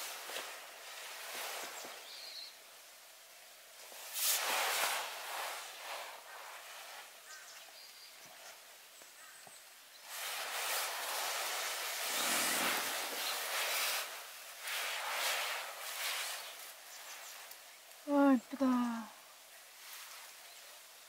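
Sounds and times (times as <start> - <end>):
rustling: 0.0 - 2.4, 10.0 - 18.0.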